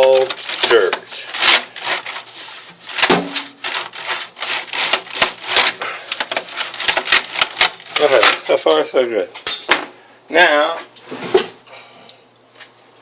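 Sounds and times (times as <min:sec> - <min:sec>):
paintbrush scrubbing keyboard: 0:00.2 - 0:08.1.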